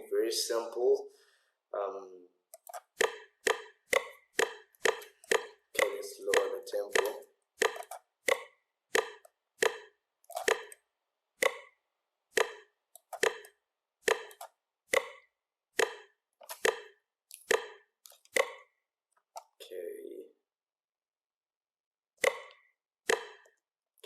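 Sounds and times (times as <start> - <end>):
metronome clicking: 3.0 - 8.4.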